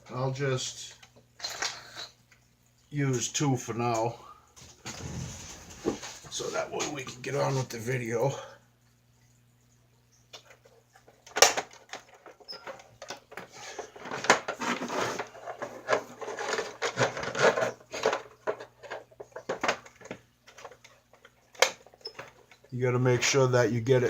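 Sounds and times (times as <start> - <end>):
plastic toy parts clattering: 10.4 - 22.7.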